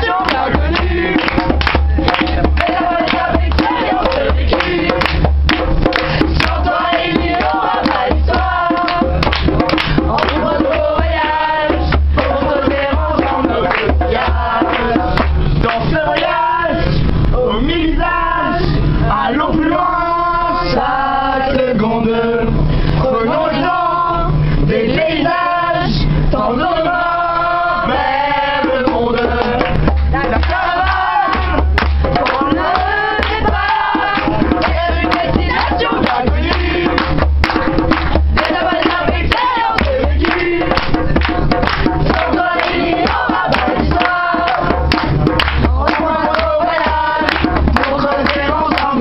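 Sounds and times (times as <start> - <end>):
steady drum beat: 0.0 - 16.5, 28.5 - 49.0
voices singing a melody: 0.0 - 49.0.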